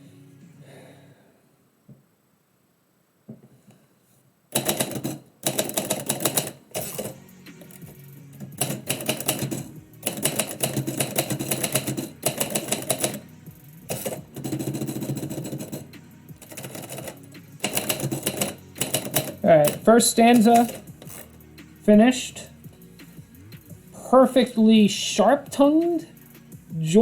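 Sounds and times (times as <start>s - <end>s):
background music: 0.0s - 1.5s, 4.5s - 27.0s
typewriter typing: 4.5s - 21.4s.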